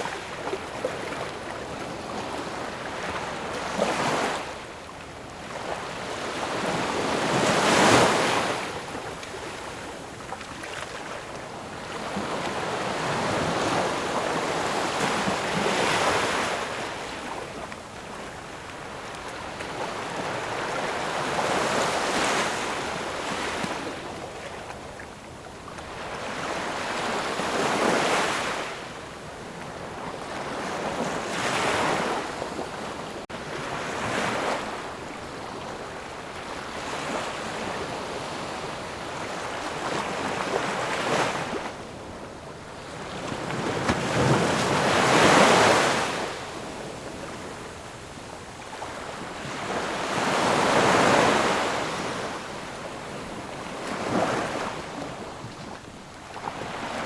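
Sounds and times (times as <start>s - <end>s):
ocean waves breaking: 30.3s - 47.6s, 48.8s - 57.0s.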